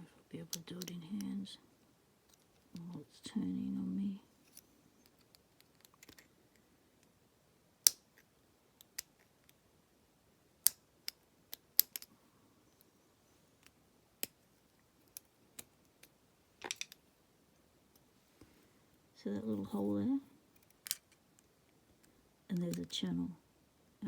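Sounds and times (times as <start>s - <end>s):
metal tool clicking on plastic: 10.6s - 12.1s.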